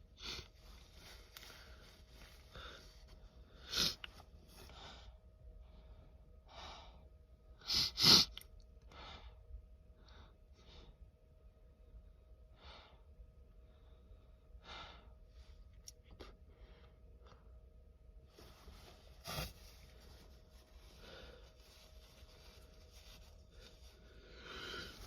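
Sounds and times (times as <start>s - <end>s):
breathing: 0.2s - 3.7s, 4.6s - 7.1s, 12.5s - 15.6s, 16.4s - 17.5s, 18.4s - 25.0s.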